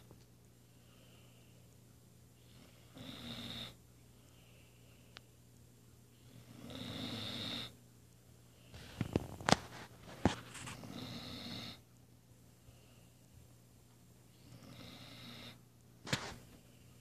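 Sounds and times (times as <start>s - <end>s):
dog snoring: 2.4s - 3.8s, 6.2s - 7.8s, 10.7s - 11.8s, 14.3s - 15.6s.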